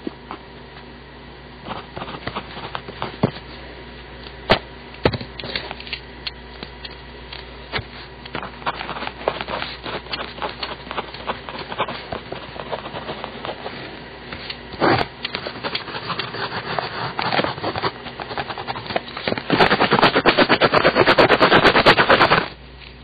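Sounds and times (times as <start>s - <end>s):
steady low hum: 0.0s - 23.0s
pencil scratching on paper: 8.6s - 13.8s, 14.8s - 22.5s.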